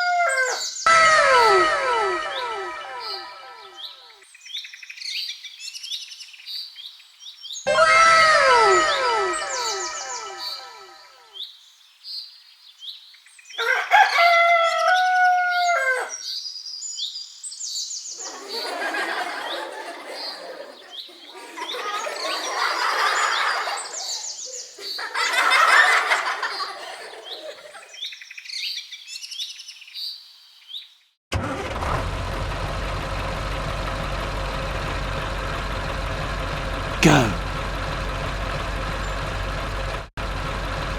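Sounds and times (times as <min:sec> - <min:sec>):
rooster crowing: 0:00.0 - 0:03.8, 0:07.7 - 0:11.0, 0:13.6 - 0:16.2
small birds chirping: 0:23.8 - 0:25.1, 0:27.2 - 0:31.2.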